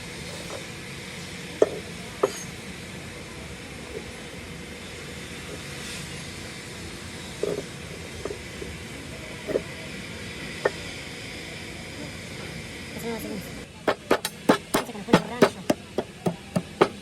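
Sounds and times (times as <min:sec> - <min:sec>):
short knocks: 0:13.9 - 0:17.0.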